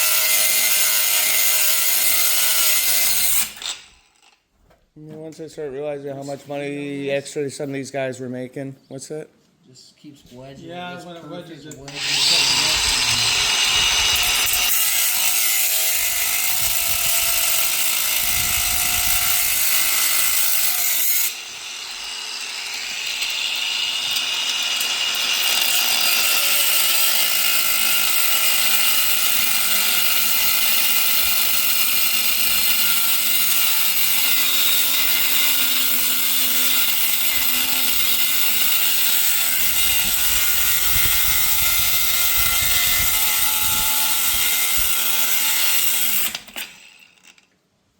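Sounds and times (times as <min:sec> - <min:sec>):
power drill boring into steel: 0:00.0 - 0:04.4, 0:11.8 - 0:47.4.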